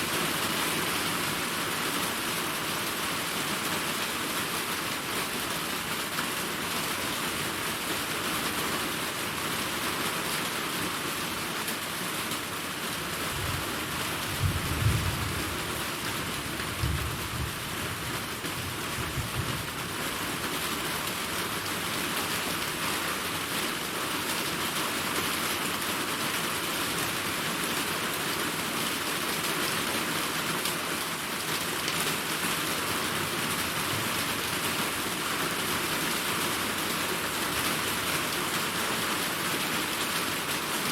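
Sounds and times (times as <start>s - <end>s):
heavy rain falling: 0.0s - 40.9s
thunder rolling: 14.3s - 15.7s, 16.7s - 18.0s.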